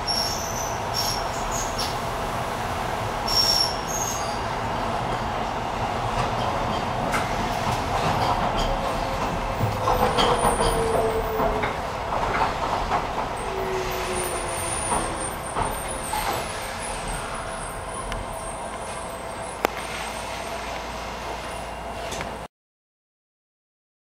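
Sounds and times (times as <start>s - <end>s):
high wheel squeals: 0.0s - 2.0s, 3.3s - 4.6s, 9.8s - 11.8s, 13.4s - 20.8s
train rumbling on rails: 0.0s - 22.5s.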